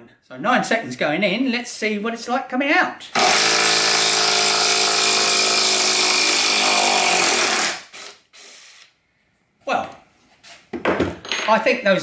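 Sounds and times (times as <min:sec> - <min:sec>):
impact driver hammering: 0:03.1 - 0:07.8.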